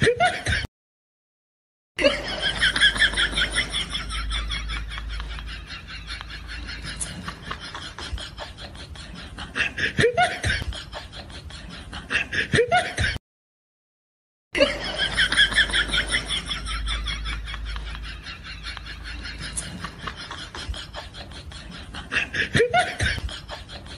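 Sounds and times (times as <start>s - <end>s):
laughing and snickering: 2.0s - 13.2s, 14.6s - 23.9s.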